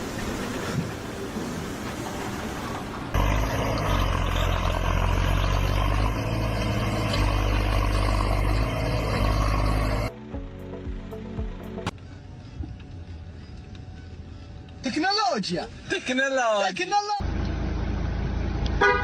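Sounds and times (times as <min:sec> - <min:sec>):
engine running with low hum: 0:03.1 - 0:14.8.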